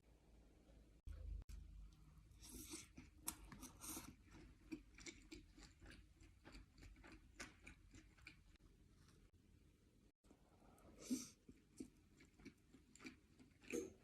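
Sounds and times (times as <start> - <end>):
person chewing: 2.3 - 8.6, 10.8 - 14.0.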